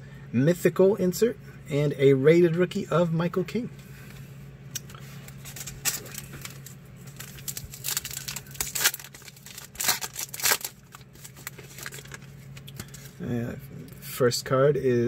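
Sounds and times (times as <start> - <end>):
wrapper tearing and crinkling: 5.3 - 13.1.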